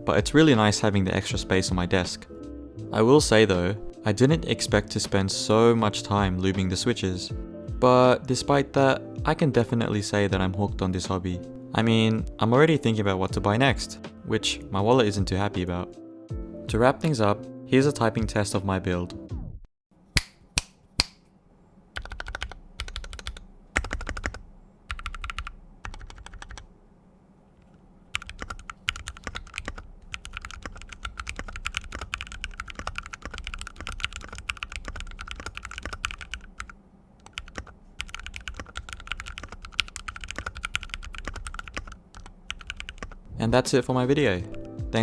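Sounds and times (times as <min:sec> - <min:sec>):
mechanical keyboard typing: 0:22.0 - 0:26.7, 0:27.6 - 0:43.3.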